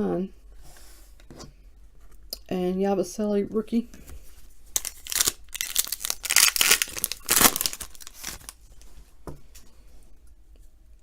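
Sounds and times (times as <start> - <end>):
wrapper tearing and crinkling: 4.7 - 8.6.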